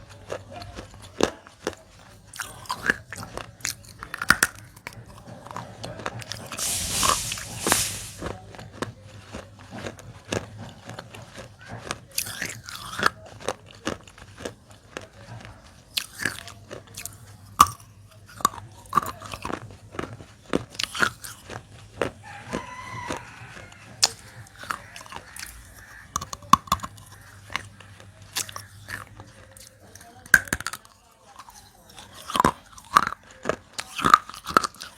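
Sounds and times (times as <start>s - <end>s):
clay crunching in chewing: 0.0s - 34.9s
hissing rustle: 6.4s - 8.4s.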